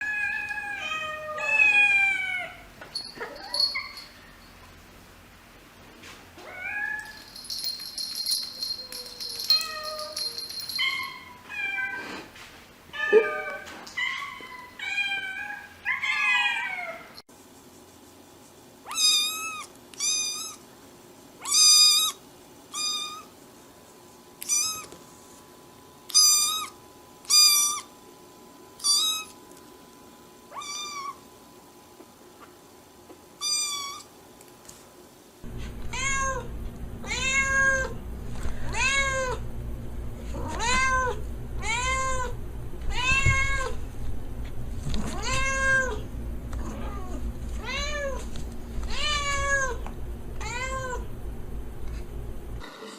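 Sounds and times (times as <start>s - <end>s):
cats and kittens meowing: 0.0s - 4.4s, 8.6s - 12.3s, 12.9s - 17.2s, 24.4s - 24.9s, 35.6s - 38.0s, 38.6s - 39.4s, 40.4s - 43.8s, 44.9s - 46.0s, 46.6s - 51.1s.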